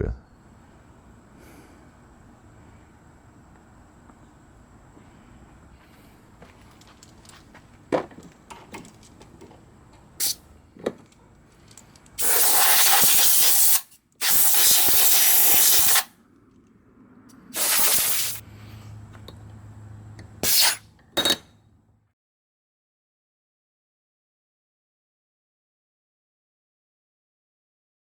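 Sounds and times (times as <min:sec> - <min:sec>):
compressed air blasting from hose: 0:10.2 - 0:10.4, 0:12.2 - 0:16.1, 0:17.3 - 0:18.4, 0:20.4 - 0:20.9.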